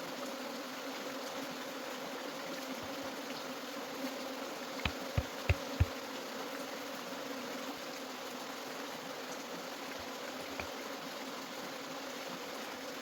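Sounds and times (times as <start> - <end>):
bees buzzing: 1.0 - 7.8, 9.6 - 13.0.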